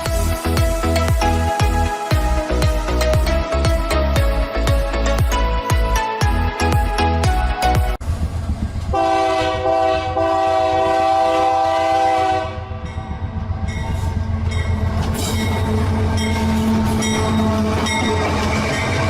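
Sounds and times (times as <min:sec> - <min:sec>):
train horn chord: 0:08.9 - 0:13.0
train wheels clicking over rail joints: 0:13.6 - 0:19.0.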